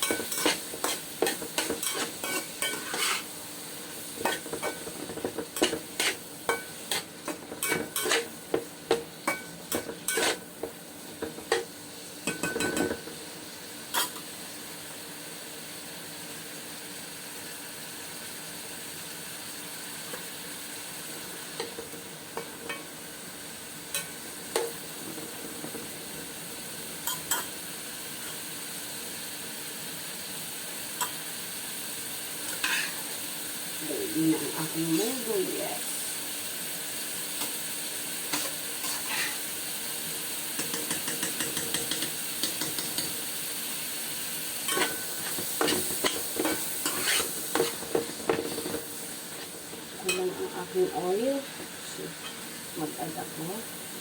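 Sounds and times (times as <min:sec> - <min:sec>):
utensil scraping and knocking pan: 0:00.0 - 0:03.3, 0:04.2 - 0:10.4, 0:44.7 - 0:48.8
food sizzling in a frying pan: 0:00.0 - 0:54.0.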